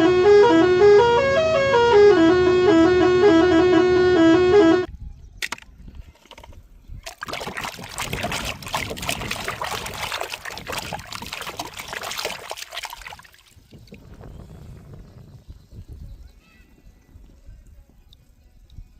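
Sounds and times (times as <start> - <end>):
water splashing and trickling: 6.1 - 18.9.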